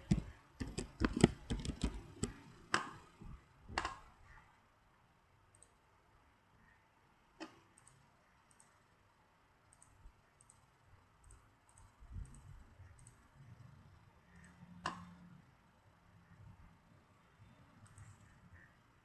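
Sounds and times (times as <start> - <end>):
computer mouse clicking: 0.0 - 3.1, 5.5 - 5.8, 7.4 - 8.8, 9.7 - 13.3, 14.3 - 15.1, 17.8 - 18.7.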